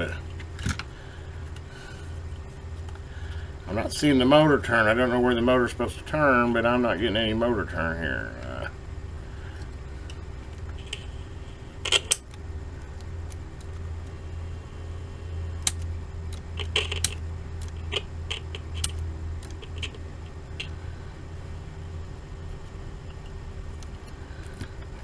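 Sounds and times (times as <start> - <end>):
low electrical hum: 0.0 - 25.0
crackles and sharp clicks: 8.3 - 14.8, 15.4 - 20.8, 22.5 - 25.0.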